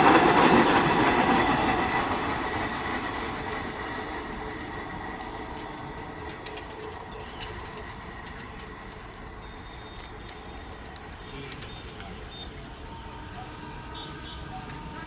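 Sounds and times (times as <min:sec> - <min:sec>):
goods train rail rumble: 0:00.0 - 0:15.0.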